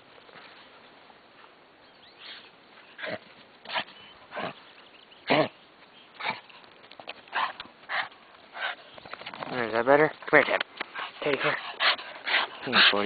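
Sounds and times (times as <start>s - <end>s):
dog sniffing: 10.8s - 13.0s.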